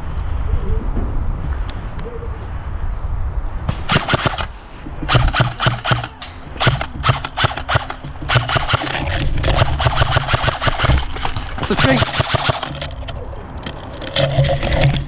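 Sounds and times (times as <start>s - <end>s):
airsoft gun firing bursts: 3.7s - 15.0s.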